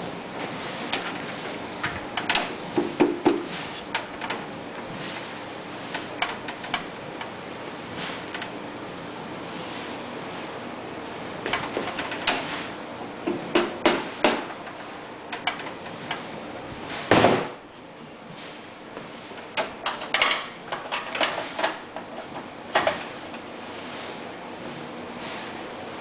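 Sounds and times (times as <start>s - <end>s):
loud thump: 17.1s - 17.6s.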